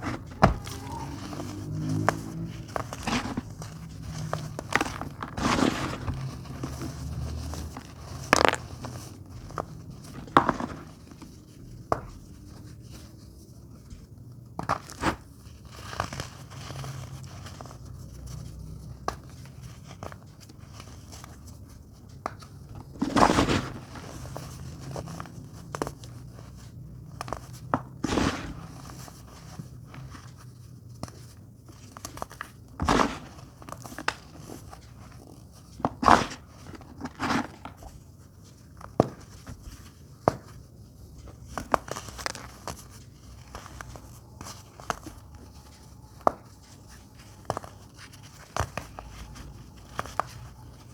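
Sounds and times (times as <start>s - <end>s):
baking soda crunching by hand: 2.9s - 7.4s.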